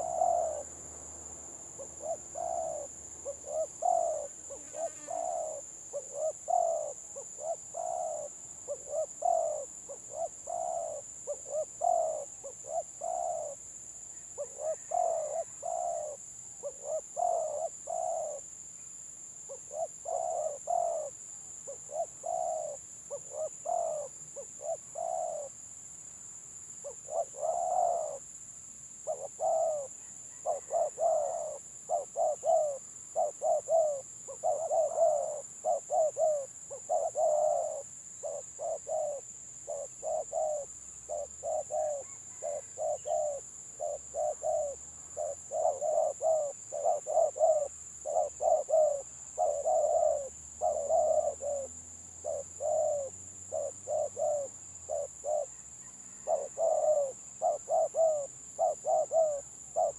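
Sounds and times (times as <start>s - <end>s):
doves cooing: 0.0s - 13.6s, 14.4s - 18.4s, 19.5s - 25.5s, 26.9s - 28.2s, 29.0s - 59.9s.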